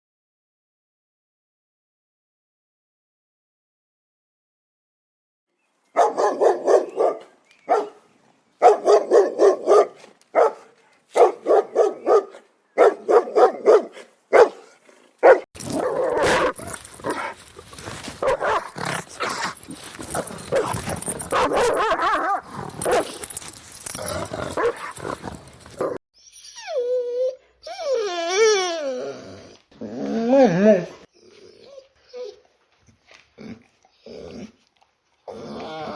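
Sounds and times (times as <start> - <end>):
dog barking: 6.0 - 8.0, 8.6 - 17.4, 18.0 - 26.0
dog growling: 15.6 - 26.0.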